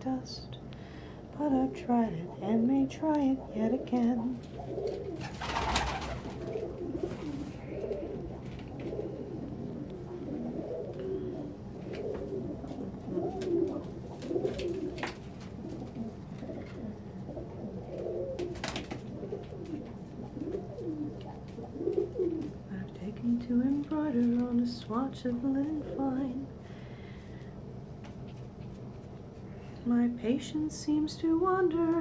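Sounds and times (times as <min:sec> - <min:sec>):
steady low hum: 0:00.0 - 0:32.0
pigeons cooing: 0:00.8 - 0:22.7.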